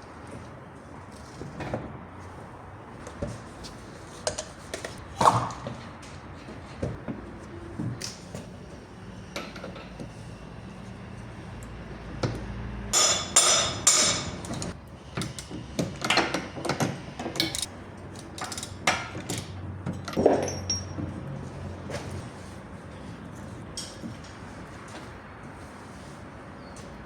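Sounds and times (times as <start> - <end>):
hammer striking metal: 13.0 - 14.7.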